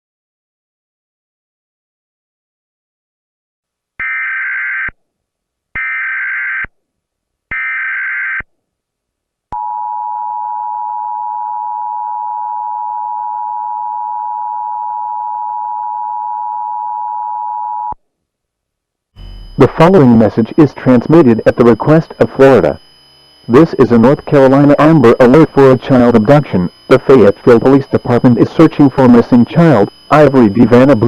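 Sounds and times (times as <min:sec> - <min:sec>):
data tone bursts: 0:19.2 - 0:31.0
two-tone attention signal: 0:19.2 - 0:31.0.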